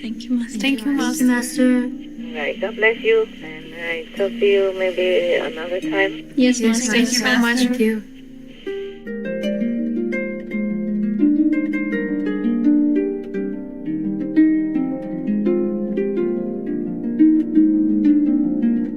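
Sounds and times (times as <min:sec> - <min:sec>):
plucked strings music: 0:00.0 - 0:18.9.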